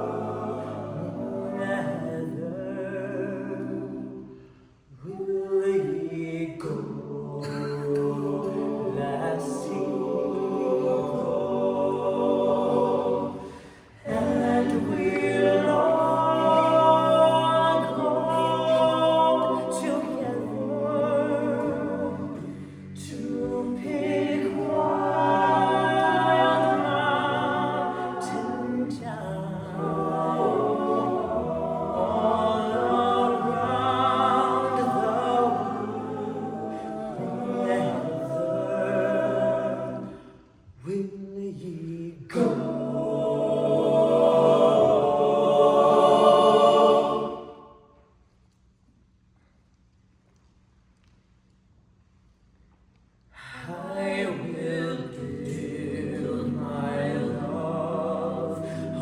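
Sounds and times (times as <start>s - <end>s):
male group singing in harmony: 0.0s - 4.4s, 5.0s - 47.7s, 53.4s - 59.0s.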